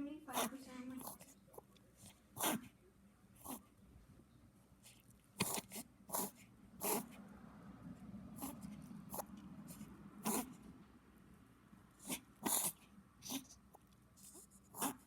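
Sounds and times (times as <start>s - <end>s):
puppy reverse sneezing: 10.2s - 10.6s, 12.0s - 13.5s.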